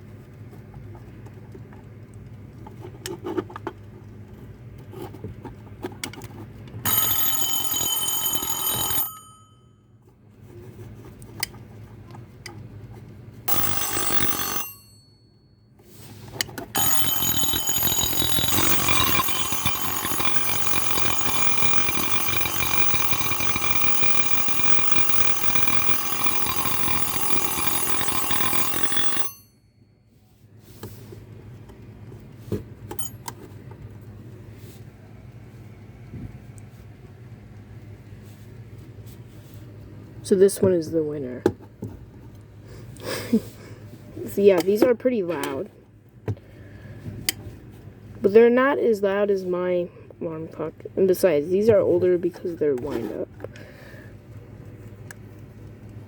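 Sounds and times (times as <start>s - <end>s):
alarm clock bells ringing: 6.9s - 9.7s, 13.5s - 15.1s, 16.8s - 29.6s.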